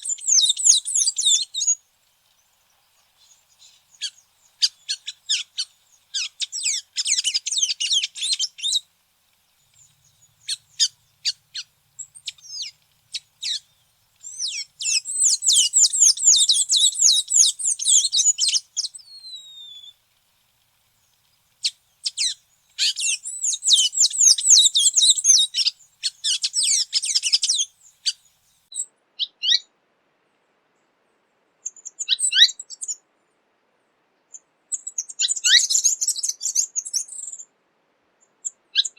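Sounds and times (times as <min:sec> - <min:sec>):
bird twittering song: 0:00.0 - 0:08.8, 0:09.5 - 0:20.0, 0:21.0 - 0:29.6, 0:34.7 - 0:37.4.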